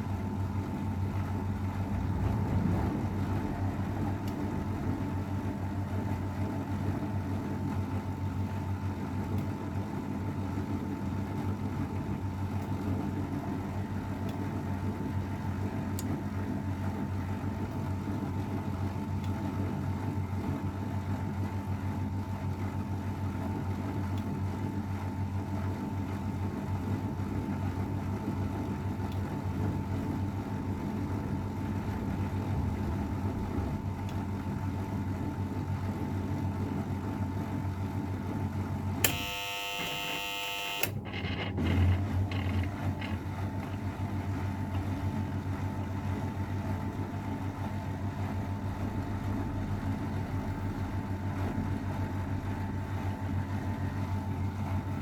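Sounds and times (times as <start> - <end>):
washing machine spinning: 0.0 - 55.0
buzzing tone: 39.0 - 43.1.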